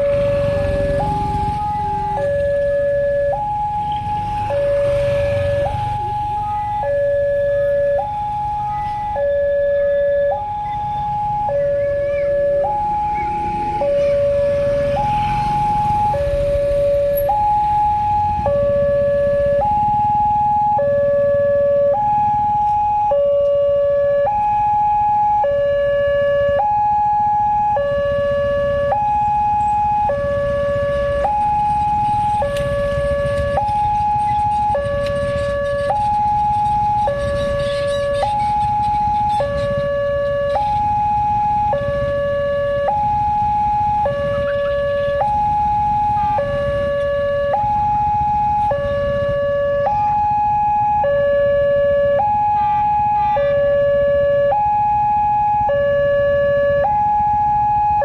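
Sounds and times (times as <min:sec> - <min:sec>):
two-tone crossing alarm: 0:00.0 - 0:58.0.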